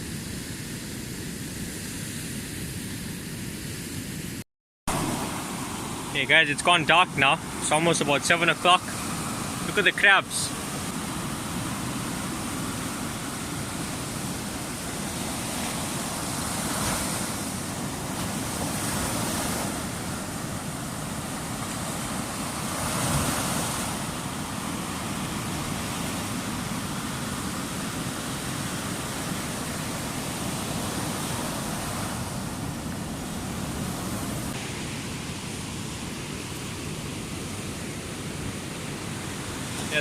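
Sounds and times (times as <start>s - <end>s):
ocean surf washing ashore: 0.0s - 40.0s.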